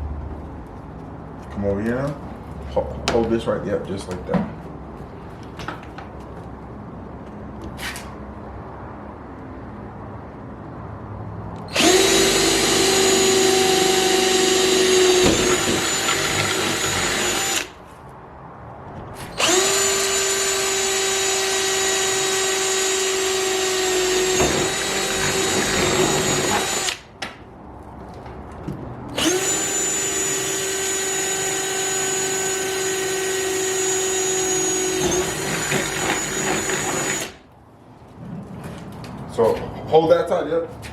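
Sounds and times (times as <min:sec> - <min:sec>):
power drill running: 0:11.7 - 0:17.8, 0:19.4 - 0:27.0, 0:29.2 - 0:37.4.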